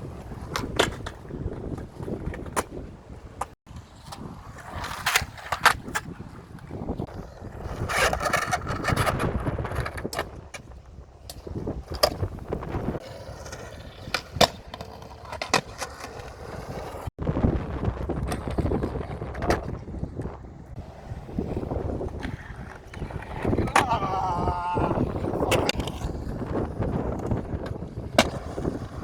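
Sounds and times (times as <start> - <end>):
wind buffeting microphone: 0.0 - 29.0.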